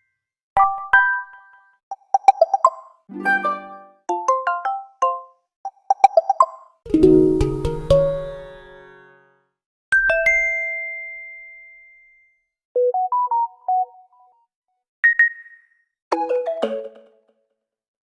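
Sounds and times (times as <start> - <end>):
two-note chime: 6.9 - 8.6
quick runs of short notes: 6.9 - 8.7.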